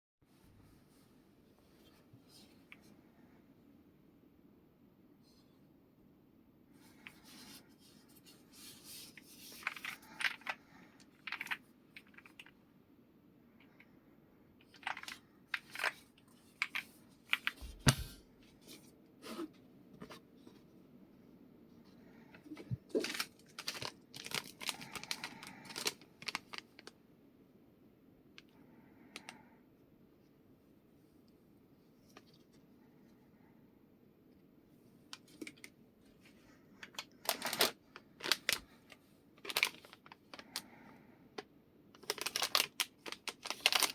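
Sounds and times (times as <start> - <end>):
cardboard and plastic tearing and crinkling: 22.9 - 26.8, 36.9 - 38.6, 39.4 - 40.4, 42.0 - 43.9.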